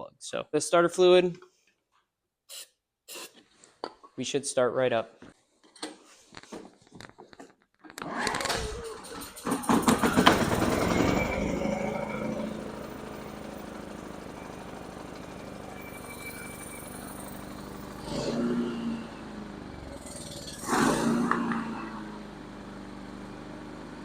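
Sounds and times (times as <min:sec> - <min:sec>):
generator engine running: 0:08.9 - 0:24.0.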